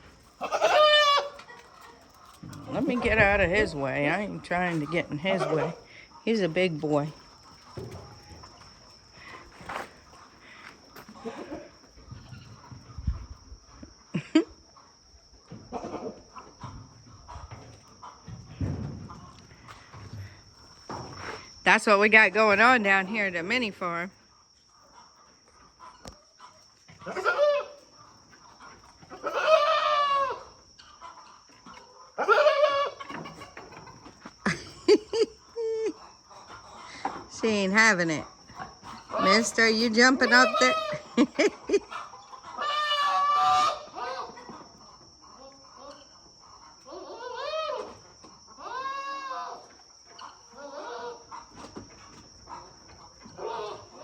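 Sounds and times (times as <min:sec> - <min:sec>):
farm animal drawn-out cries: 0:00.0 - 0:06.6, 0:07.4 - 0:12.8, 0:24.9 - 0:34.6, 0:35.5 - 0:54.0
goat bleating: 0:00.4 - 0:01.3.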